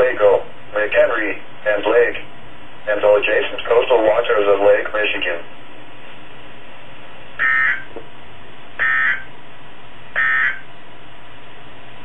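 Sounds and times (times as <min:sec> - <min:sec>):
steady radio hiss: 0:00.0 - 0:12.0
raspy electronic data bursts: 0:07.4 - 0:07.9, 0:08.8 - 0:09.3, 0:10.2 - 0:10.7.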